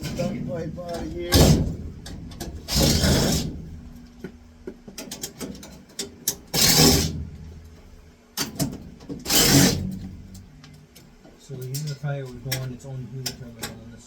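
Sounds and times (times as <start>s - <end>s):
metal pipe scraping and rattling: 0.0s - 4.2s, 5.0s - 7.6s, 9.1s - 10.5s.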